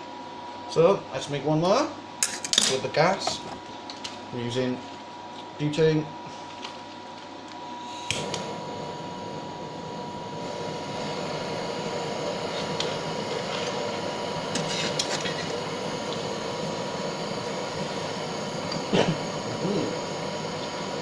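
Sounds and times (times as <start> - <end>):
blowtorch flame hissing: 7.6 - 21.0
blowtorch lighter click: 8.0 - 8.6.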